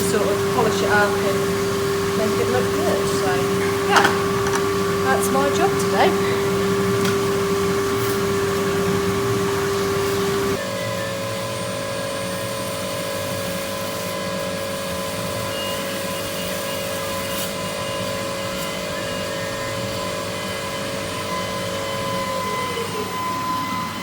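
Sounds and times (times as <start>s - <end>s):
constant noisy hum: 0.0s - 12.0s
stone lathe machine whine: 0.0s - 24.0s.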